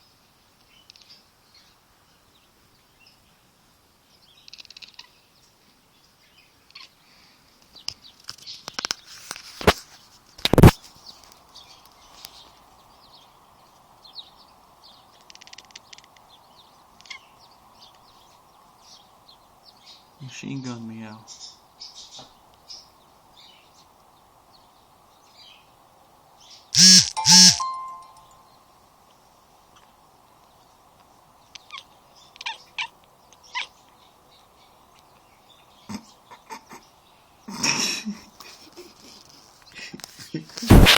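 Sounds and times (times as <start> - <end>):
kitten chirping: 26.8 - 28.2.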